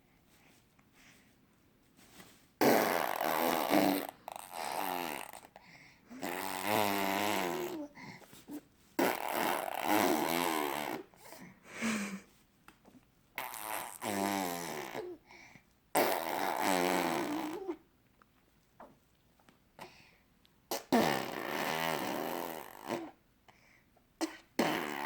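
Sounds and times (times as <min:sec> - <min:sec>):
baby blowing raspberries: 0:02.6 - 0:12.2, 0:13.4 - 0:15.2, 0:16.0 - 0:17.8, 0:20.7 - 0:23.2, 0:24.2 - 0:25.0.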